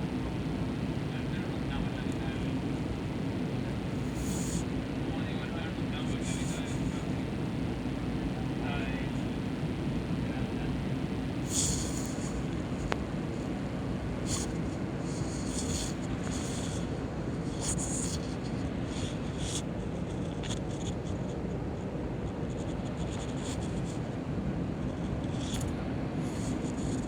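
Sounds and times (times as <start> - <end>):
airplane cabin rumble: 0.0 - 20.2.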